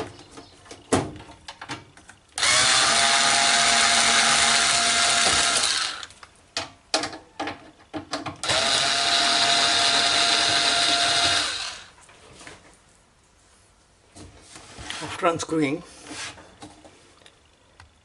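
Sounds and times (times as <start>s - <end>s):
power screwdriver running: 2.4s - 6.1s, 8.4s - 11.9s.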